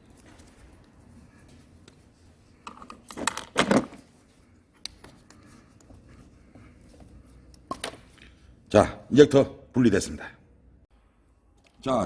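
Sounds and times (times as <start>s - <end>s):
metal parts and tools clattering: 2.6s - 4.1s.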